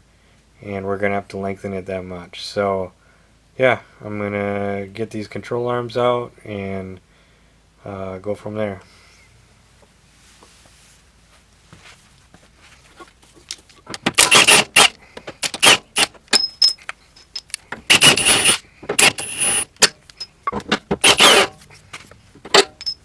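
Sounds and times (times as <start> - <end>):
metal tools clattering: 13.0 - 21.8, 22.4 - 23.0.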